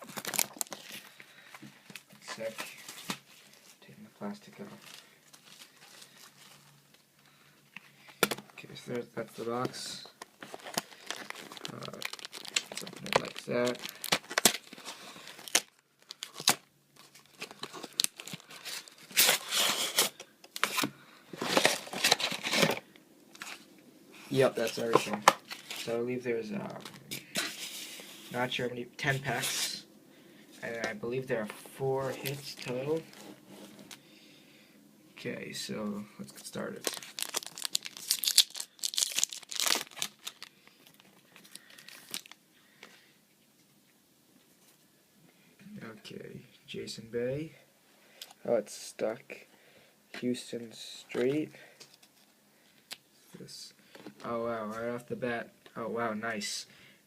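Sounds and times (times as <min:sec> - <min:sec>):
packaging tearing and crinkling: 0:00.0 - 0:01.1, 0:10.4 - 0:23.6, 0:24.6 - 0:25.9, 0:36.8 - 0:42.4
packaging rustling: 0:00.0 - 0:03.8, 0:04.7 - 0:07.1, 0:09.4 - 0:23.7, 0:24.3 - 0:26.0, 0:36.5 - 0:42.4.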